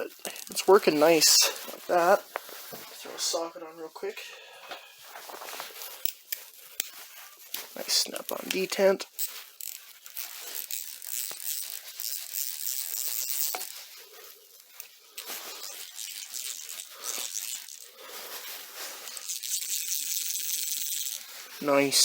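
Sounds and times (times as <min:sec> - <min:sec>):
ratchet pawl clicking: 0:00.2 - 0:00.6, 0:06.0 - 0:17.9, 0:19.0 - 0:22.0.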